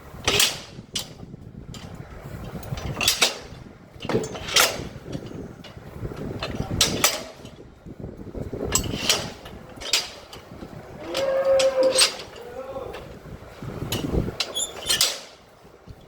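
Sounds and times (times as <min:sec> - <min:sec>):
knocks and clatter: 0:00.2 - 0:07.7
cow mooing: 0:11.0 - 0:13.0.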